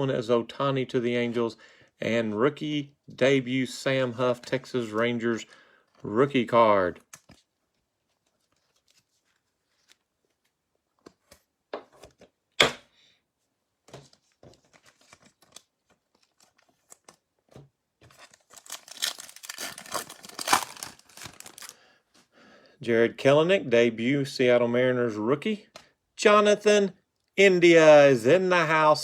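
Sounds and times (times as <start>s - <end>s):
trading cards being handled: 7.0s - 12.4s, 13.8s - 21.8s
foil wrapper tearing and crinkling: 18.1s - 21.8s.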